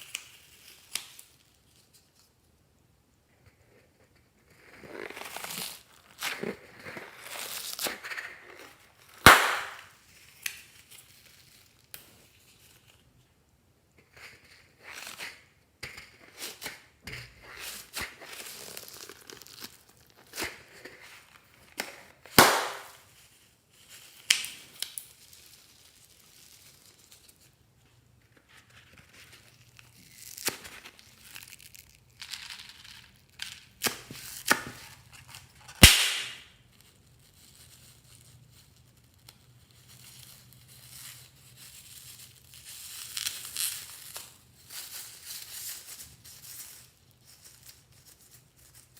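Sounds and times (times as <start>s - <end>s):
slime crackling and popping: 9.0s - 10.9s, 22.3s - 23.1s, 35.8s - 36.6s
slime snapping: 9.3s - 9.8s, 22.4s - 23.0s, 35.8s - 36.4s.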